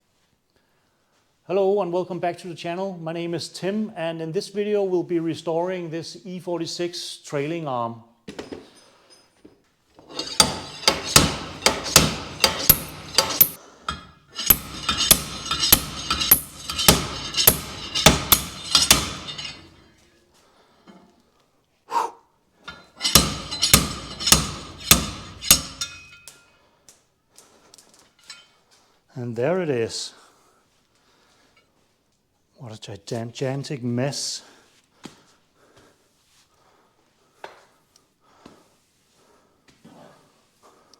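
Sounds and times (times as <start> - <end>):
hammer ringing on metal: 10.2 - 19.8, 23.0 - 26.3.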